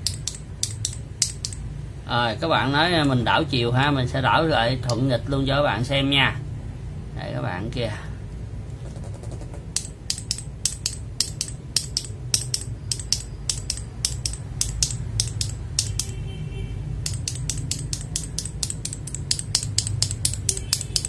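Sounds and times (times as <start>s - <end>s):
mechanical keyboard switches clacking: 0.0s - 1.6s, 9.7s - 16.1s, 17.1s - 21.0s.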